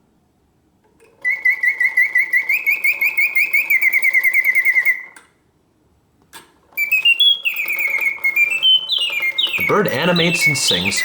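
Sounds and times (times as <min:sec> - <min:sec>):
mechanical bird whistling trill: 0:01.2 - 0:05.2, 0:06.8 - 0:11.0.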